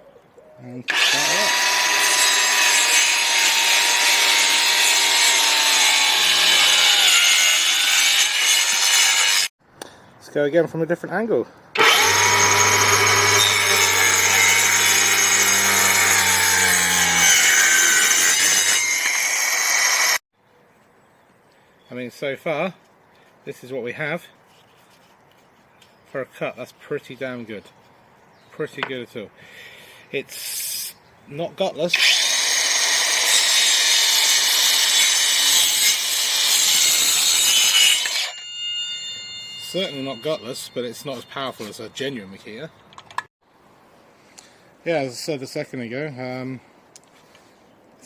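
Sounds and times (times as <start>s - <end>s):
circular saw cutting wood: 0.9s - 9.5s, 11.8s - 20.2s, 31.9s - 42.1s
saw motor whine: 0.9s - 9.5s, 11.8s - 20.2s.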